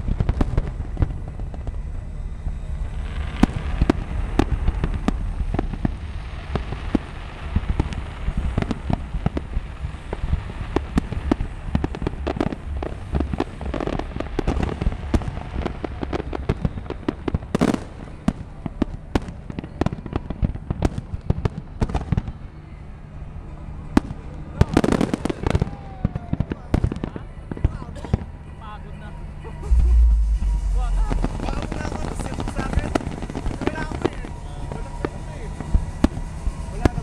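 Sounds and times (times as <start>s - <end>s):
deep rumble: 0.0s - 19.1s, 29.6s - 37.0s
fireworks bangs and crackles: 0.0s - 37.0s.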